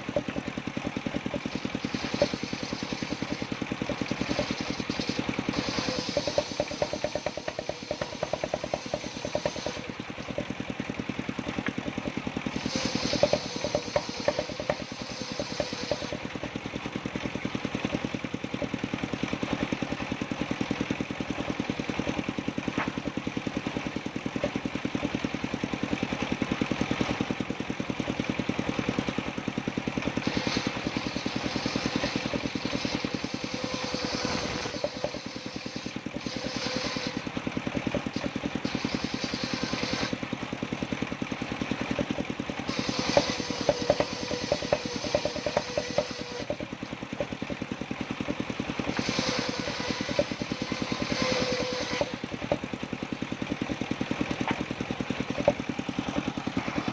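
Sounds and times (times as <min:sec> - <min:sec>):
saw blade cutting timber: 0:00.0 - 0:56.9
sawmill engine running: 0:00.0 - 0:56.9
sharp knocks: 0:01.2 - 0:09.9, 0:12.7 - 0:16.3, 0:42.7 - 0:47.4.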